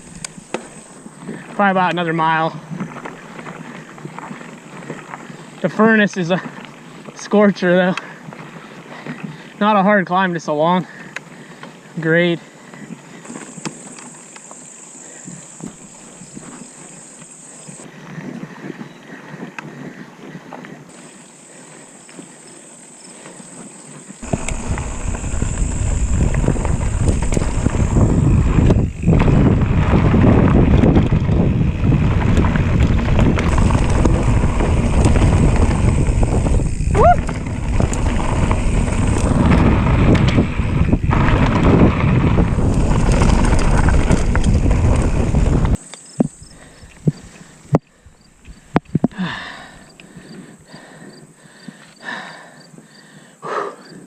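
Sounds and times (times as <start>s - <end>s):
bike tyre and rattle noise: 0.0s - 52.9s
clicks and knocks from bike: 24.2s - 49.2s
wind buffeting microphone: 24.2s - 50.7s.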